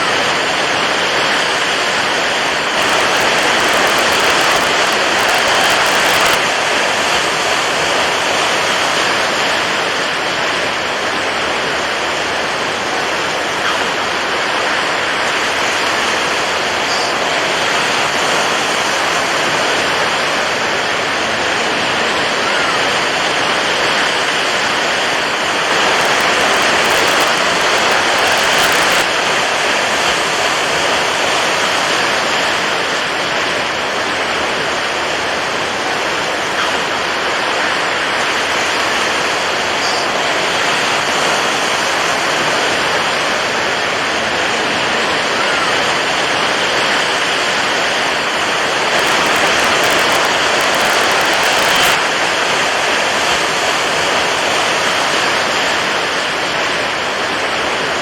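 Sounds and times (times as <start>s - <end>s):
rushing water: 0.0s - 58.0s.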